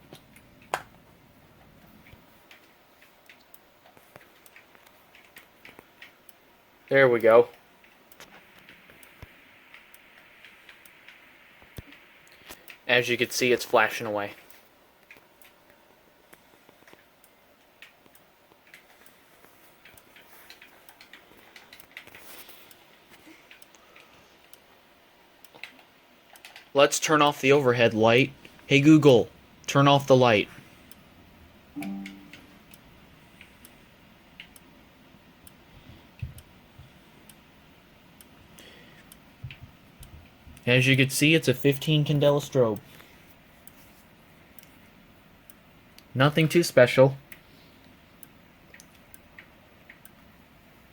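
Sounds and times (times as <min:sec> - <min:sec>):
strobe ticking and clicking: 0:31.8 - 0:43.0, 0:47.3 - 0:50.4.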